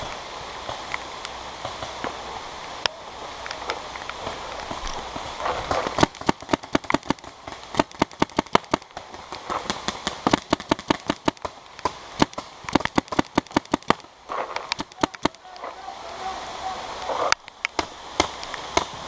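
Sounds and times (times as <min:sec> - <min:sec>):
paintball markers firing: 0:05.8 - 0:14.0, 0:14.6 - 0:15.6.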